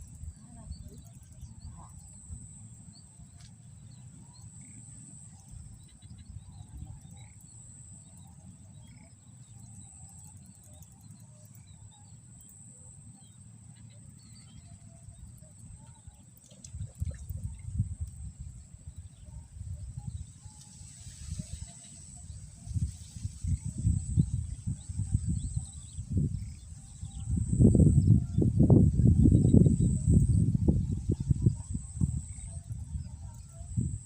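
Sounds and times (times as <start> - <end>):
low wind rumble: 22.2 - 34.0.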